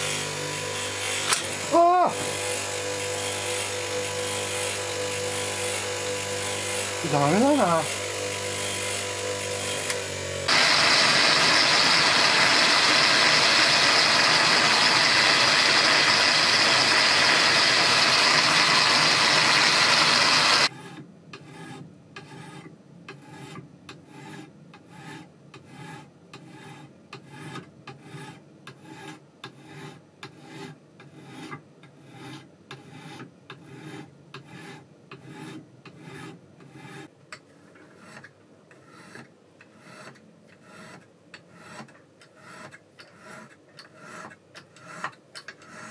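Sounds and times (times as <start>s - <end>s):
power tool running: 0.0s - 20.7s.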